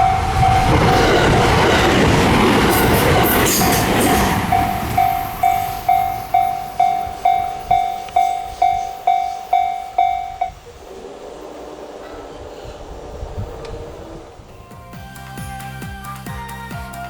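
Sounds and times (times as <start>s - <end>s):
crossing warning bell ringing: 0.0s - 10.6s
train passing: 0.0s - 15.8s.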